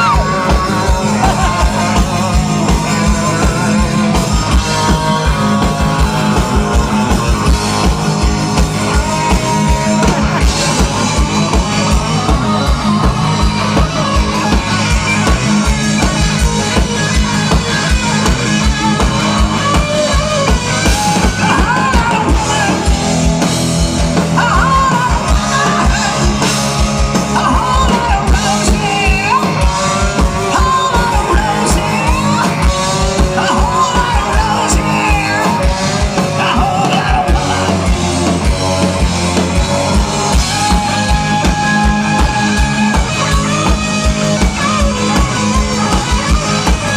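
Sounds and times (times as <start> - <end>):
person singing: 0.0 - 15.2, 20.9 - 23.6, 24.2 - 38.8
bass guitar: 0.0 - 46.9
drums: 0.0 - 46.9
electric guitar: 0.0 - 46.9.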